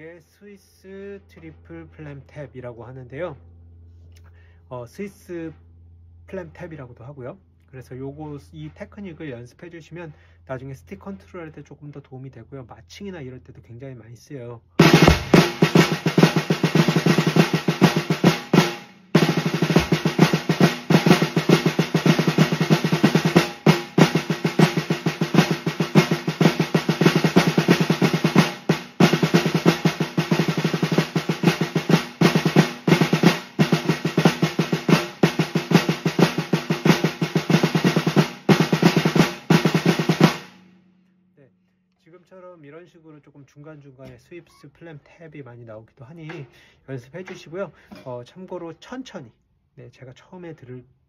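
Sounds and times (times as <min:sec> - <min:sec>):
snare drum flams and taps: 0:14.8 - 0:40.6.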